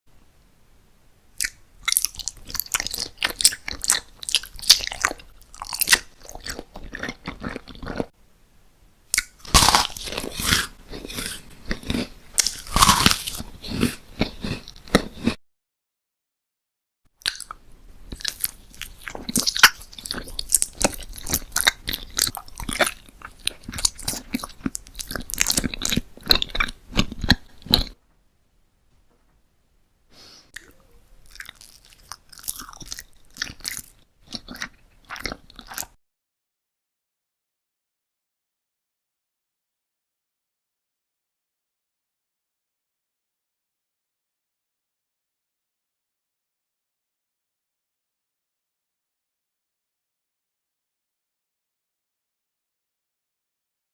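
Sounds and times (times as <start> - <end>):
person chewing crunchy food: 1.4 - 8.1, 9.1 - 15.4, 17.2 - 28.0, 30.2 - 36.0.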